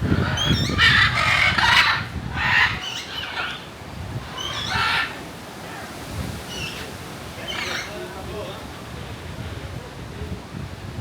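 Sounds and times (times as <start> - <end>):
harsh bird calls: 0.0 - 8.2.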